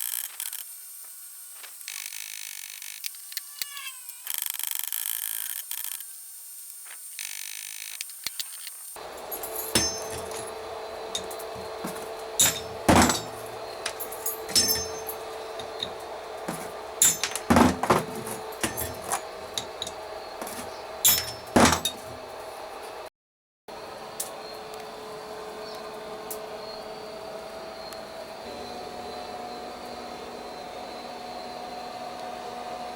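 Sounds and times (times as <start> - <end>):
steady hum: 9.0 - 23.1
hammer striking hot iron: 9.2 - 22.3.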